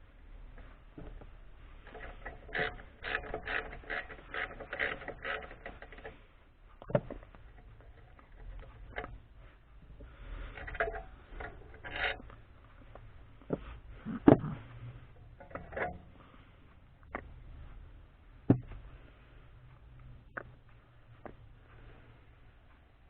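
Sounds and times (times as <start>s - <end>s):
clicking and scraping: 0.5s - 17.8s.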